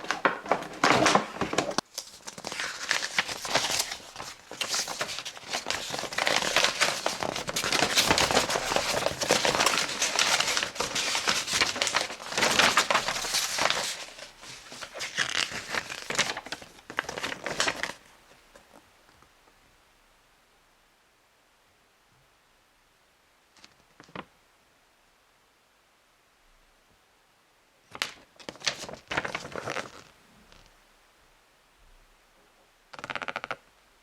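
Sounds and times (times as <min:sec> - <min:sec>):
packaging crinkling: 0:00.0 - 0:18.0.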